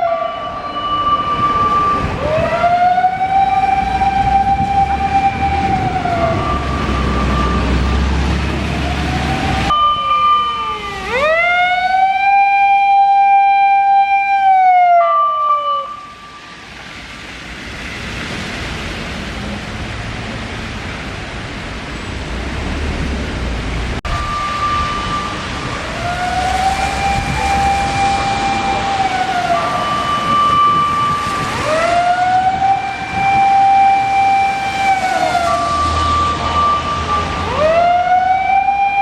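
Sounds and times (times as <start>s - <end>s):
electronic emergency siren: 0.0s - 16.7s, 24.0s - 39.0s
road traffic noise: 0.0s - 39.0s
heavy vehicle rumble: 0.9s - 9.7s, 16.5s - 38.2s.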